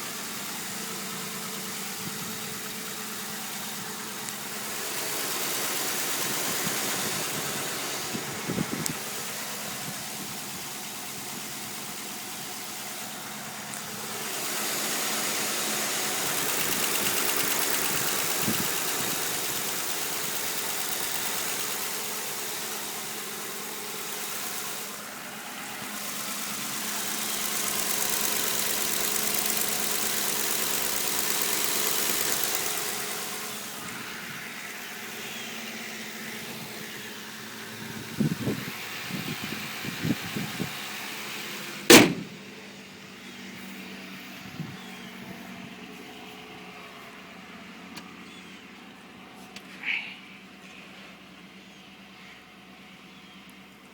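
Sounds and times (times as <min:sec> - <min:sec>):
engine ticking and clicking: 0:00.0 - 0:42.6
car engine idling: 0:00.0 - 0:53.9
sharp knocks: 0:41.9 - 0:42.4.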